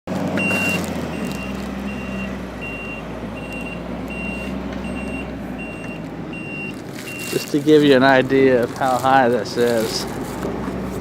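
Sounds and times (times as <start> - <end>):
engine running rumble: 0.1 - 11.0
vehicle back-up alarm beeping: 0.4 - 7.5.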